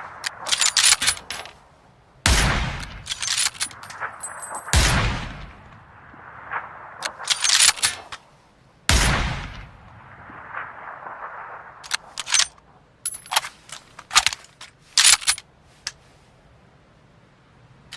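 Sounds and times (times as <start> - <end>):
rifle shot: 2.2 - 7.8, 8.9 - 12.1.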